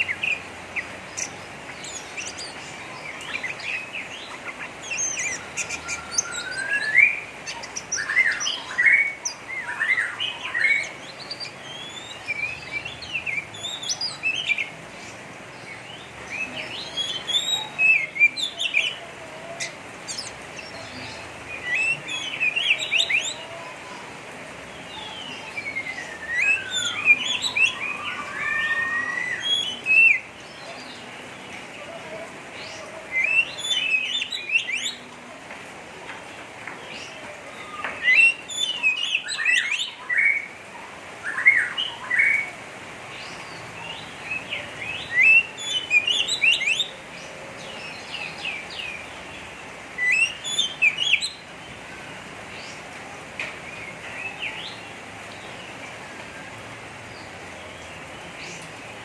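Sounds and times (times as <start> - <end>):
bird chirping and whistling: 4.9 - 7.3, 26.1 - 30.2.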